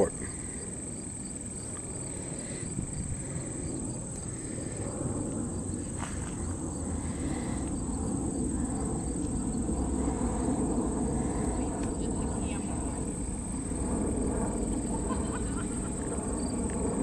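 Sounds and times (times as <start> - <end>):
high-pitched insect chorus: 0.0 - 17.0
low rumbling noise: 0.0 - 17.0.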